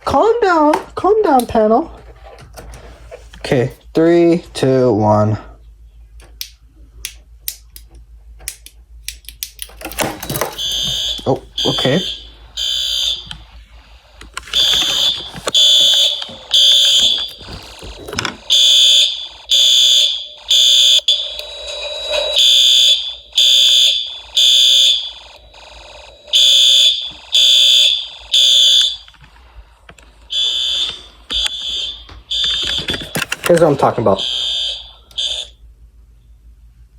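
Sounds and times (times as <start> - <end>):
fire alarm high-pitched pulses: 10.2 - 33.2, 33.8 - 35.6.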